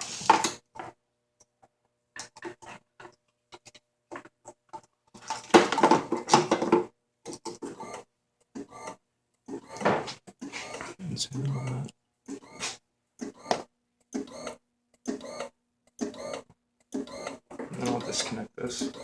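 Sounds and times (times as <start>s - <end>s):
scraping and clicking handling noise: 0.0s - 7.8s.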